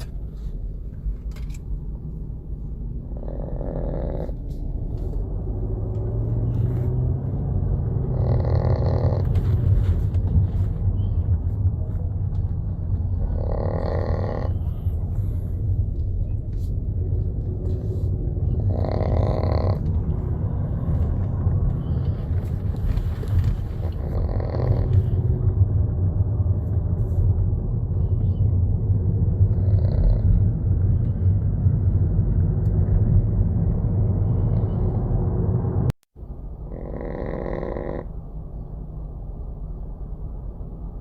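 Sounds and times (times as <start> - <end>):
steady low rumble: 0.0 - 41.0
small dog snoring: 3.1 - 4.6, 8.0 - 9.6, 13.2 - 15.3, 18.5 - 20.2, 23.8 - 25.2, 29.4 - 30.5, 36.6 - 38.1.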